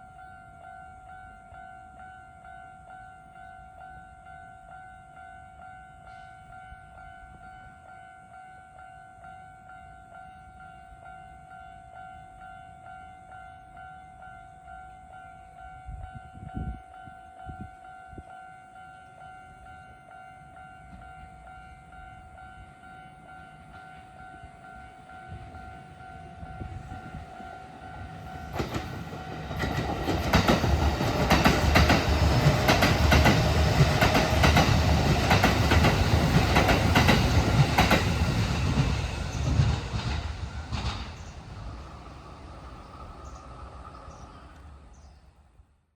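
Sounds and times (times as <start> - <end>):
train wheels clattering: 26.6 - 44.2.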